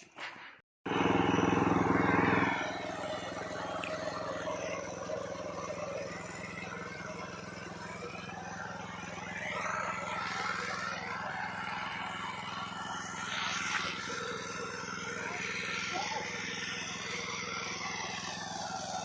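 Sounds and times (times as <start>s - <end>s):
ploughing machine engine: 0.9s - 19.0s.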